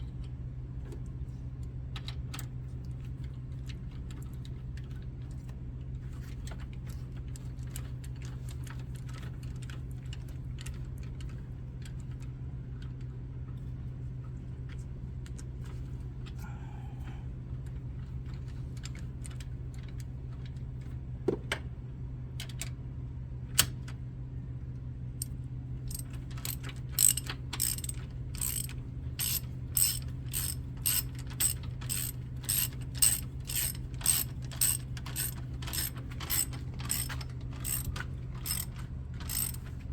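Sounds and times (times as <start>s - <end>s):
socket ratchet clicking: 25.9s - 39.7s.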